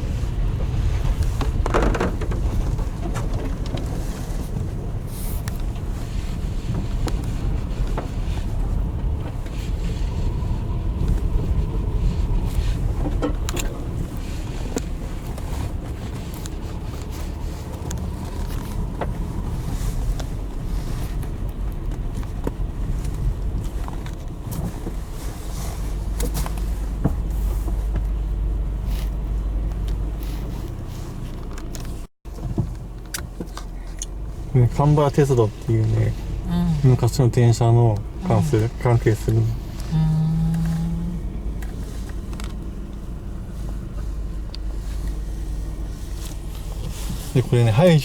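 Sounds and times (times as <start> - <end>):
car road and engine rumble: 0.0 - 48.0.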